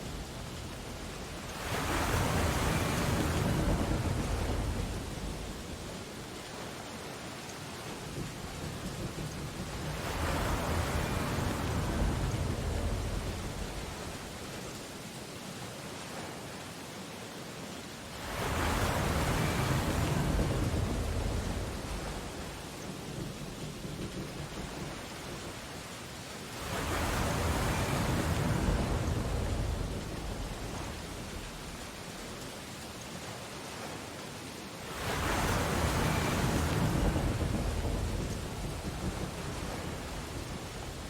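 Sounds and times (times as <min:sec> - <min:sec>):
ocean waves breaking: 0:00.0 - 0:16.8, 0:17.9 - 0:41.0.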